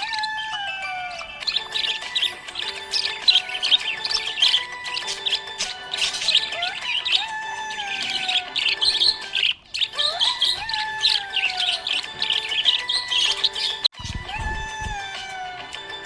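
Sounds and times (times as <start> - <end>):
budgerigars chirping: 0.0 - 15.8
background music: 0.0 - 16.0.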